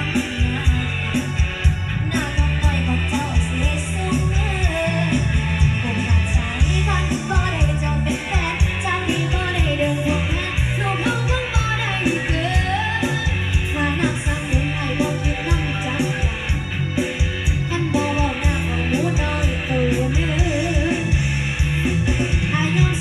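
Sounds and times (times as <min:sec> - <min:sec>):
song through loudspeaker: 0:00.0 - 0:23.0.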